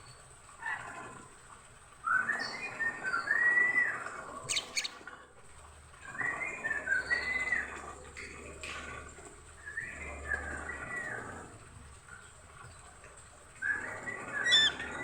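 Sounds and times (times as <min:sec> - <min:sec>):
bird whistled song: 0:02.1 - 0:05.0, 0:13.6 - 0:15.0.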